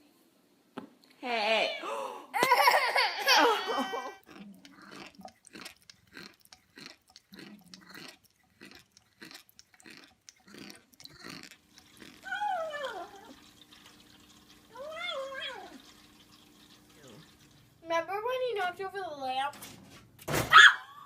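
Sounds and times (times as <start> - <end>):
quick wet clicking: 4.5 - 12.3.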